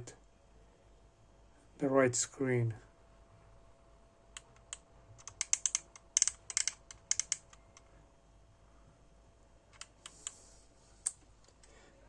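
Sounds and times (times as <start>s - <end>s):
small plastic clicks and taps: 4.4s - 7.9s.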